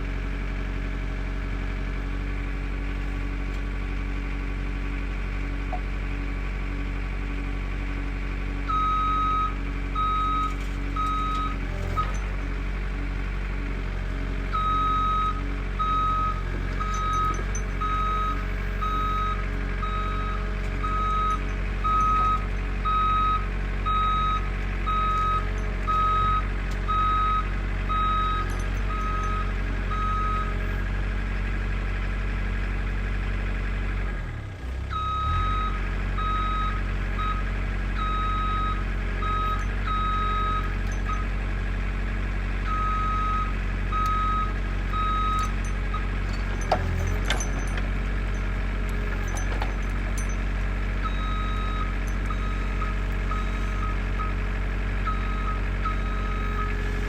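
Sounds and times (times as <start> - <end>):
engine running steadily: 0.0 - 57.0
backup alarm beeping: 42.7 - 46.1, 51.0 - 54.4.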